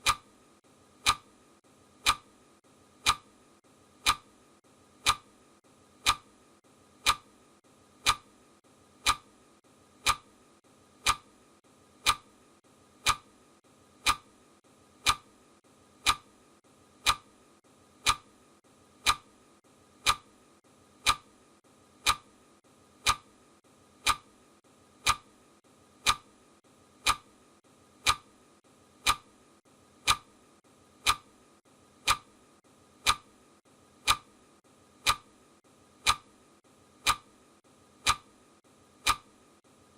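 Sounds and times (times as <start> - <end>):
clock ticking: 0.0 - 0.4, 1.0 - 1.4, 2.0 - 2.4, 3.0 - 3.4, 4.0 - 4.4, 5.0 - 5.4, 6.0 - 6.4, 7.0 - 7.4, 8.0 - 8.4, 9.0 - 9.4, 10.0 - 10.4, 11.0 - 11.4, 12.0 - 13.4, 14.0 - 14.4, 15.0 - 15.4, 16.0 - 16.4, 17.0 - 17.4, 18.0 - 18.4, 19.0 - 20.4, 21.0 - 21.4, 22.0 - 22.4, 23.0 - 23.4, 24.0 - 24.4, 25.0 - 25.4, 26.0 - 26.4, 27.0 - 27.4, 28.0 - 28.3, 29.0 - 29.4, 30.0 - 30.4, 31.0 - 31.4, 32.0 - 32.4, 33.0 - 33.4, 34.0 - 34.4, 35.0 - 35.4, 36.0 - 36.4, 37.0 - 37.4, 38.0 - 38.4, 39.0 - 39.4.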